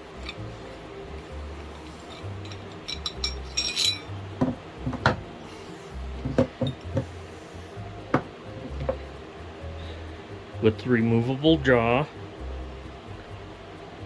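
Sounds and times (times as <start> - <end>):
background music with bass: 0.0 - 14.0
metal wrench parts clinking: 0.2 - 5.1, 6.2 - 7.0.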